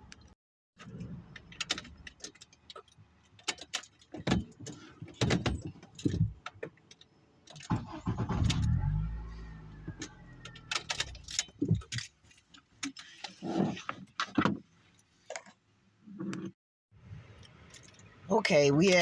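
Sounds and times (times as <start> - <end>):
car engine starting and running: 7.7 - 11.9.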